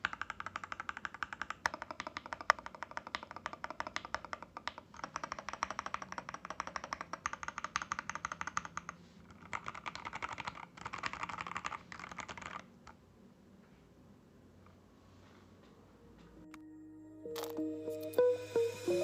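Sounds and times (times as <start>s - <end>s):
mechanical keyboard typing: 0.0s - 13.0s.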